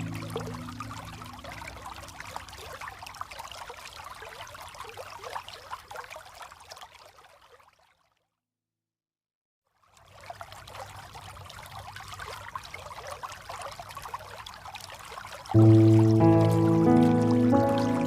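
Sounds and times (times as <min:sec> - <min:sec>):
falling water splashing: 0:00.0 - 0:07.5, 0:10.0 - 0:18.0.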